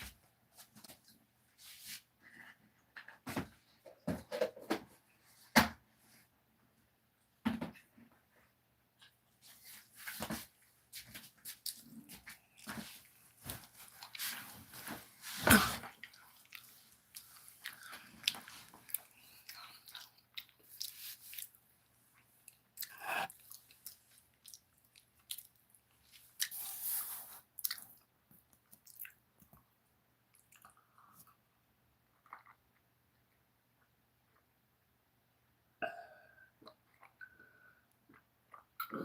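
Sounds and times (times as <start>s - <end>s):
mouth sounds of drinking: 22.8s - 23.4s.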